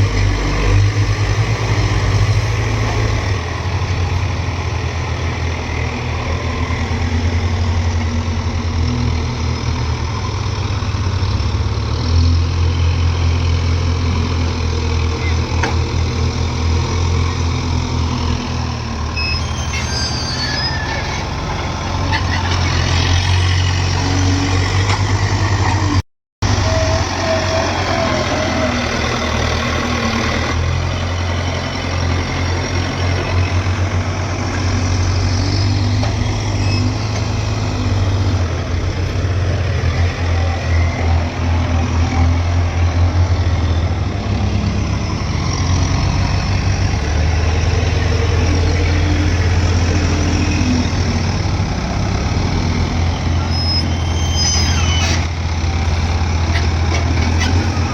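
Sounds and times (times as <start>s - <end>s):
diesel engine running under load: 0.0s - 57.9s.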